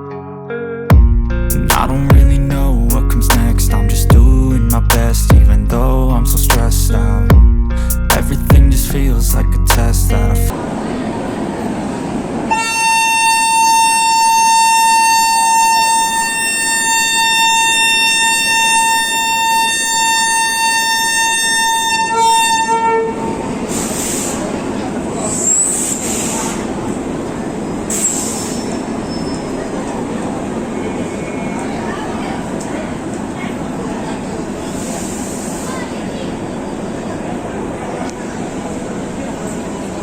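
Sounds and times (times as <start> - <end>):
moving train noise: 8.2 - 40.0
locomotive horn honking: 12.5 - 24.0
brief hisses: 23.7 - 24.5, 25.2 - 26.7, 27.9 - 28.8, 34.7 - 35.9.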